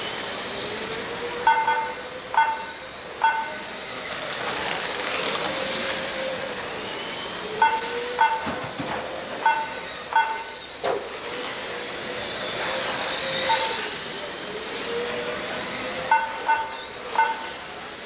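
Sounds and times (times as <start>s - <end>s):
rc car motors whining: 0.0s - 18.0s
short electronic beeps: 7.6s - 8.5s.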